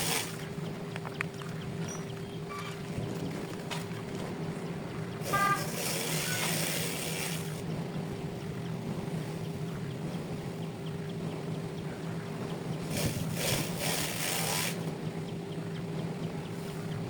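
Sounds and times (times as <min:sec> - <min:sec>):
engine running: 0:00.0 - 0:17.0
short toot: 0:05.2 - 0:06.7
hissing noise: 0:05.2 - 0:07.6.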